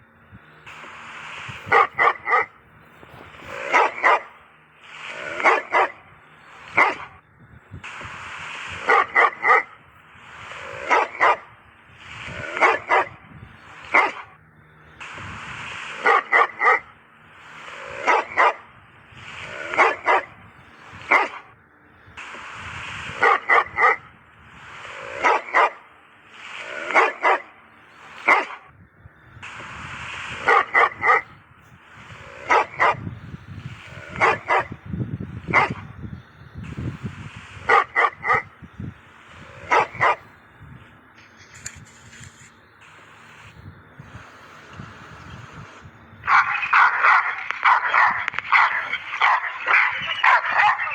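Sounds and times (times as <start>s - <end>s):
dog barking: 1.6s - 2.6s, 3.4s - 4.4s, 5.0s - 6.1s, 6.7s - 7.2s, 8.8s - 9.8s, 10.6s - 11.5s, 12.3s - 13.2s, 13.8s - 14.4s, 16.0s - 17.0s, 17.7s - 18.7s, 19.4s - 20.4s, 21.0s - 21.5s, 23.1s - 24.1s, 24.9s - 25.9s, 26.5s - 27.6s, 28.2s - 28.7s, 30.3s - 31.4s, 32.2s - 33.1s, 34.0s - 34.8s, 35.4s - 35.9s, 37.6s - 38.5s, 39.4s - 40.3s, 46.3s - 50.9s.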